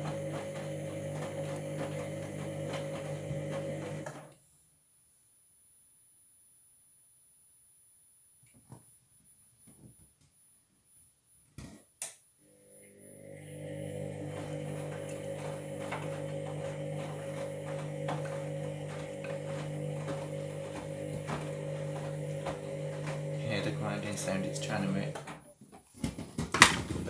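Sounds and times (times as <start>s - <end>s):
washing machine hum: 0.0s - 4.4s, 12.5s - 25.6s.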